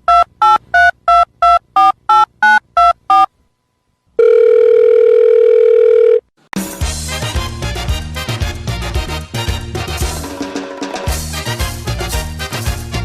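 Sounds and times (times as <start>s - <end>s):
telephone line tone: 4.2s - 6.3s.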